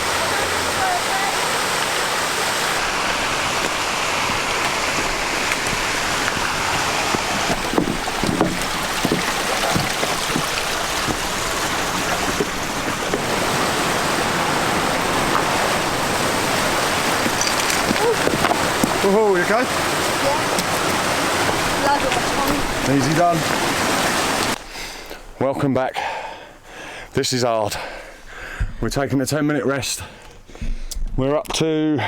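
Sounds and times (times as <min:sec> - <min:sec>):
mountain stream rushing: 0:00.0 - 0:25.0
soft knocks: 0:07.1 - 0:13.3.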